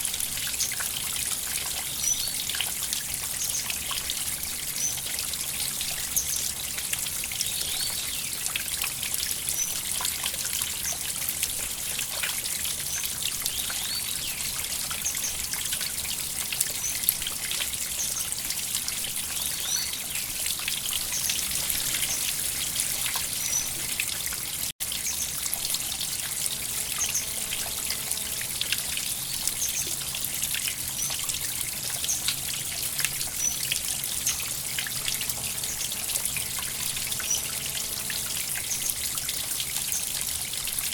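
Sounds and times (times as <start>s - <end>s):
river water flowing: 18.1s - 40.9s
small high splashes: 20.6s - 30.5s.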